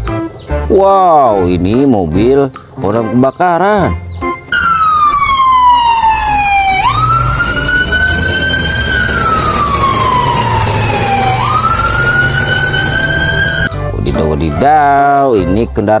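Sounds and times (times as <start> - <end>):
fire engine siren wailing: 4.5 - 13.7
low rumble: 4.8 - 13.7.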